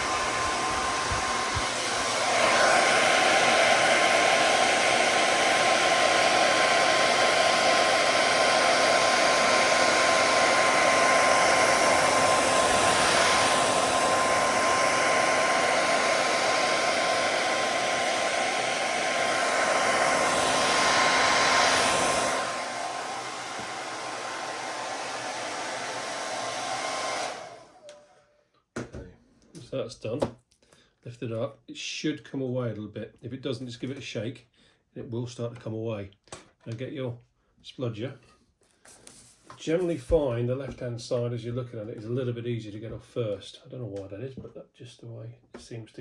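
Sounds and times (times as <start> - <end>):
hair dryer blowing: 0.0 - 28.2.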